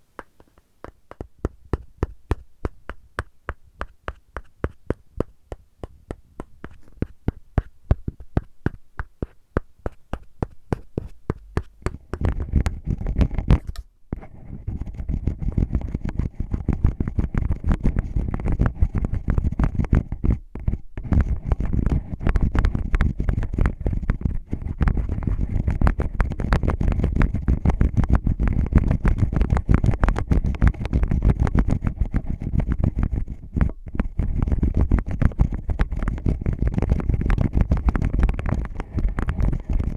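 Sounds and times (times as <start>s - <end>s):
scraping against microphone: 29.3s - 39.9s.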